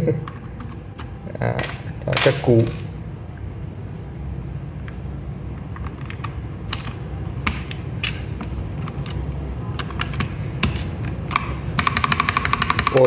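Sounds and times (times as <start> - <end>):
mechanical keyboard key clacks: 9.8 - 13.0.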